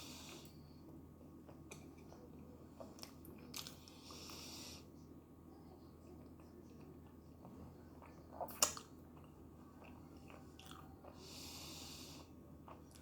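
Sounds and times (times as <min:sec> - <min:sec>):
close-up chewing: 0:06.2 - 0:13.0.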